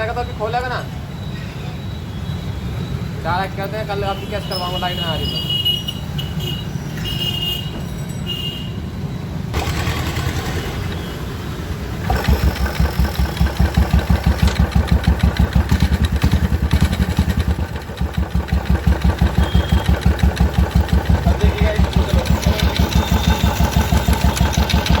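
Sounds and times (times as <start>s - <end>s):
engine idling with even thump: 12.0s - 25.0s
primary chain running: 17.8s - 25.0s.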